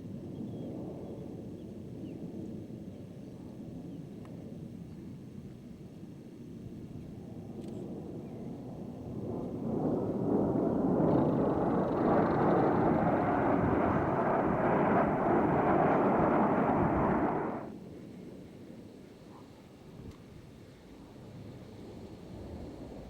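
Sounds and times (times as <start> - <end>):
jet roar flying past: 8.7 - 17.7.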